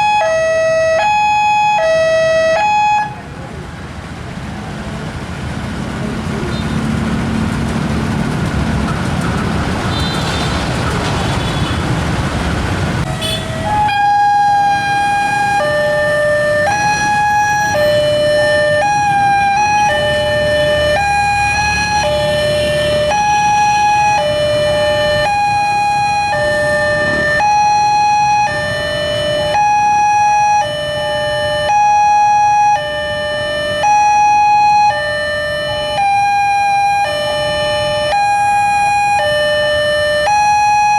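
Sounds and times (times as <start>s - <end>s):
level crossing warning alarm: 0.0s - 3.2s, 13.1s - 40.9s
road traffic: 0.0s - 40.9s.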